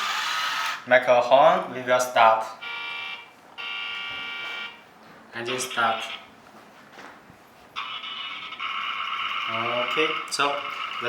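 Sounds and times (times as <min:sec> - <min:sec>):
high-pitched toy engine drone: 0:07.8 - 0:11.0.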